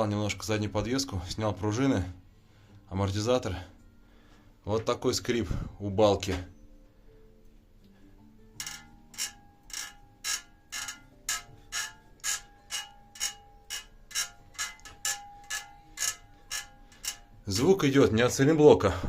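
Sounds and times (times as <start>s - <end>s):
suspension beam squeaking: 8.6s - 17.7s.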